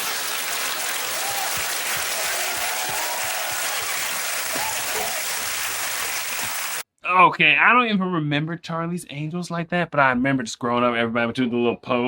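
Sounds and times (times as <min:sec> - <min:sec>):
studio audience applauding: 0:00.0 - 0:06.8.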